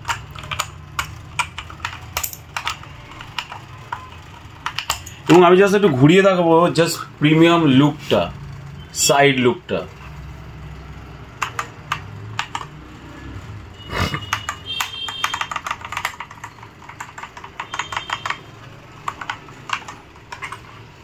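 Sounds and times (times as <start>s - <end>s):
mechanical keyboard keys clicking: 0.0s - 5.5s, 11.4s - 12.8s, 14.2s - 21.0s.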